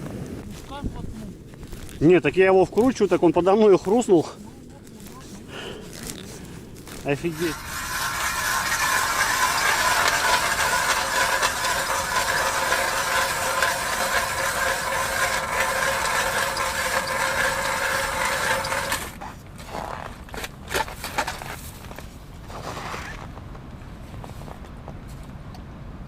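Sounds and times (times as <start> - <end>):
power drill boring into ice: 7.2 - 19.2.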